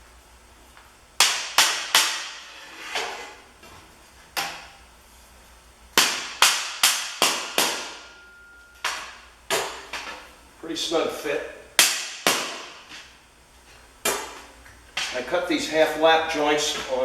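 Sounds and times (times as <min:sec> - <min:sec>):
mallet striking steel ring: 0:06.4 - 0:09.0.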